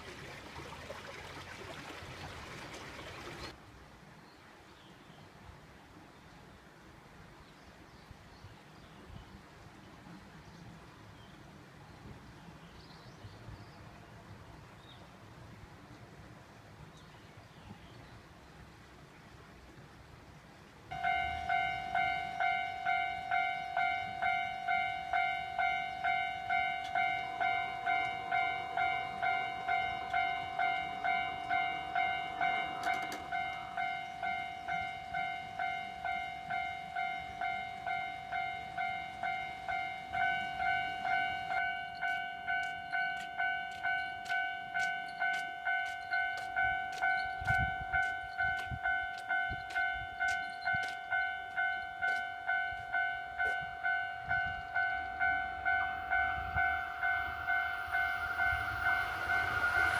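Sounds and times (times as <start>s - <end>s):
level crossing warning bell: 20.9s - 59.9s
train wheels clicking over rail joints: 20.9s - 59.9s.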